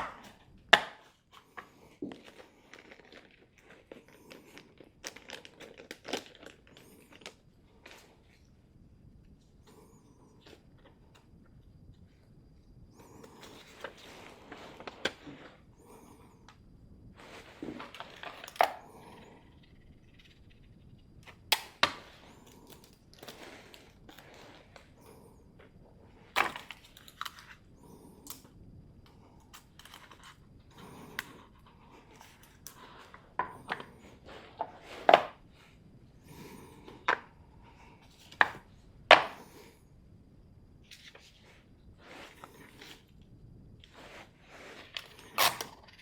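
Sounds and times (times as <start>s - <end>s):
soft rustling: 9.2s - 16.5s, 17.1s - 21.3s, 30.0s - 38.9s, 43.8s - 46.0s
objects clicking and knocking: 29.6s - 35.4s.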